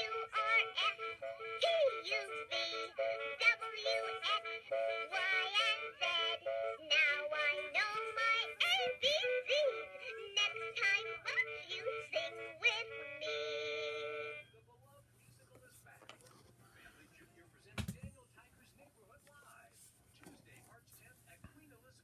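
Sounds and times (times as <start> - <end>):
electronic toy playing sung tune: 0.0 - 14.4.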